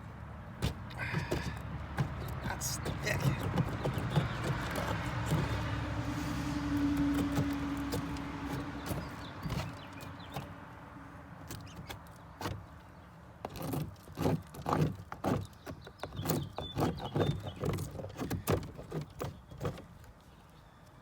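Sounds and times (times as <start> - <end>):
metal tool scraping wood: 0.6 - 10.5, 13.4 - 20.0.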